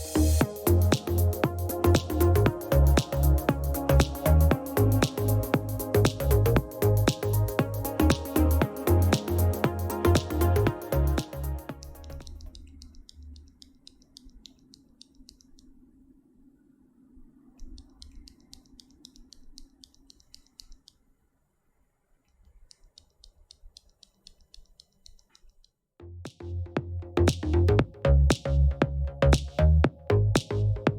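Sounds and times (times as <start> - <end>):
light rapid clicking: 0.4 - 15.9, 17.5 - 21.0, 22.2 - 26.4.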